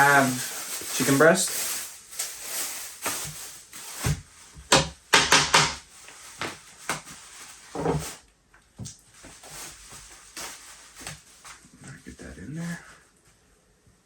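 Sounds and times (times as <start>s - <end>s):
kitchen knocks and rustles: 3.0s - 11.3s.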